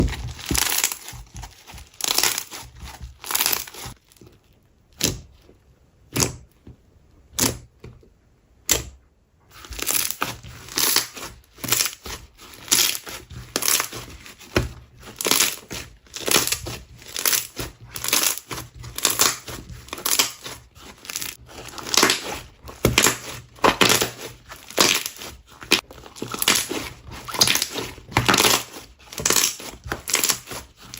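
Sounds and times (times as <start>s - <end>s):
slime crunching and crackling: 0.0s - 6.5s, 9.5s - 30.9s.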